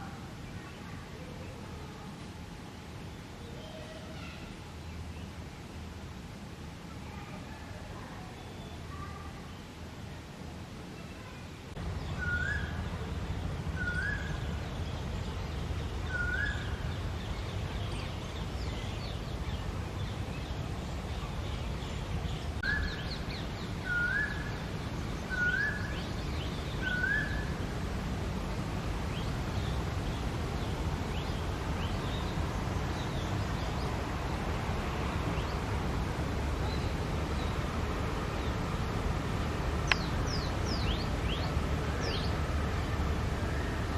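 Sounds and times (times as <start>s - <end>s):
small birds chirping: 11.0s - 43.9s
steady low rumble: 11.7s - 43.9s.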